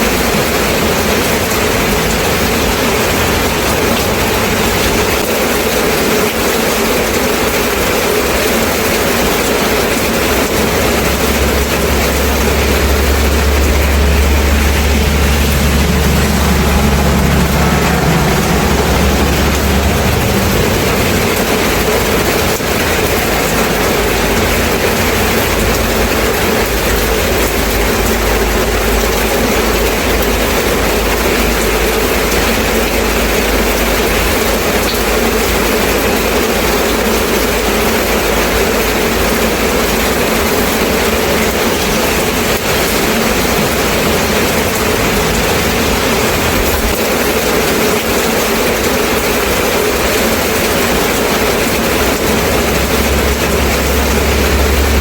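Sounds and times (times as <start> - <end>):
heavy rain falling: 0.0 - 55.0
low steady rumble: 8.4 - 34.8, 49.4 - 55.0.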